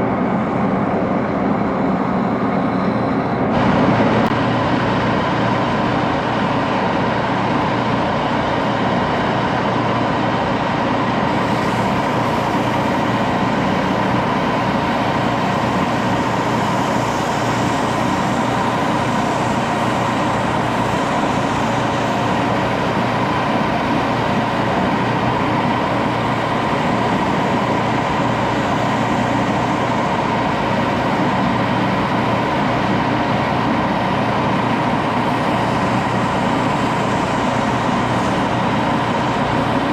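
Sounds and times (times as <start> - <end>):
lathe motor humming and whining: 0.0 - 39.9
machining hiss: 11.3 - 33.0, 34.8 - 39.9.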